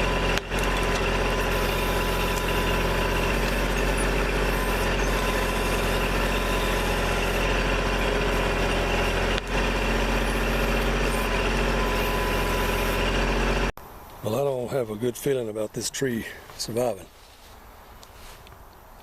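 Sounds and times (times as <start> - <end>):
diesel engine running: 0.0 - 13.8.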